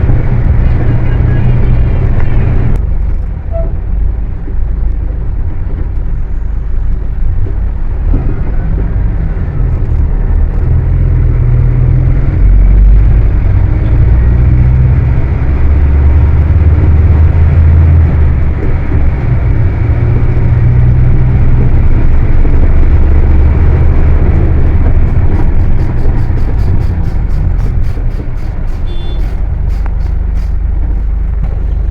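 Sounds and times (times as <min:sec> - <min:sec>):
bus diesel engine rumbling: 0:00.0 - 0:31.9.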